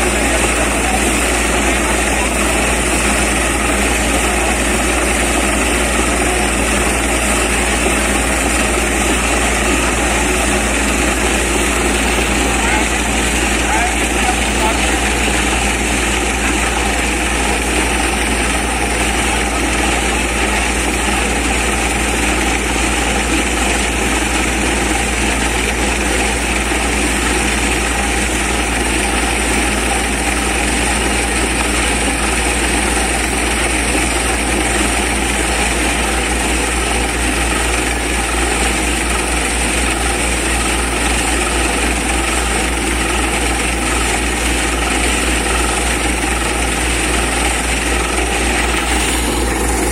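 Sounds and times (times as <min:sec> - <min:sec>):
air compressor hissing: 0:00.0 - 0:49.9
drilling rig engine drone: 0:00.0 - 0:49.9.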